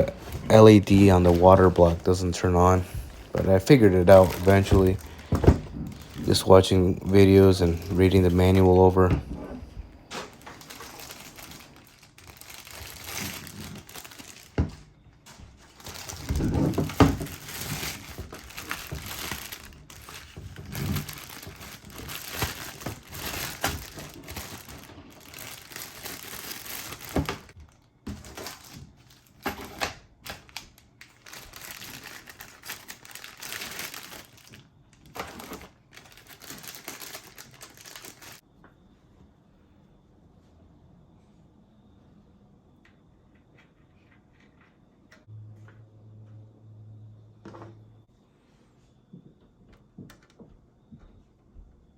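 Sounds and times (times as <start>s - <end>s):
plastic crinkling and rustling: 0.0s - 38.4s.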